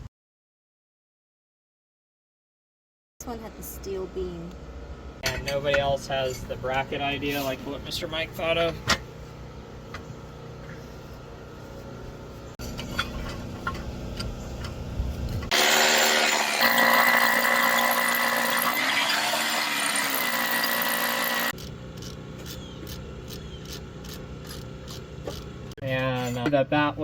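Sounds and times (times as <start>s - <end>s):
power tool whining: 15.4s - 25.7s.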